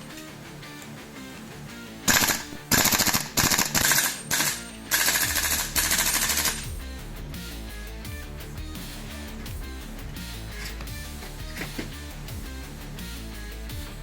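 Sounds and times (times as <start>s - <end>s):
airsoft rifle firing bursts: 2.1s - 6.7s.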